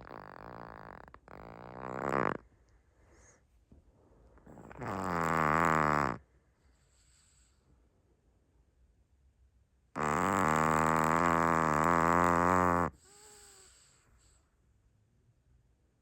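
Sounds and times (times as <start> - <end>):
dog snoring: 0.0 - 2.5, 4.4 - 7.7, 10.0 - 14.5.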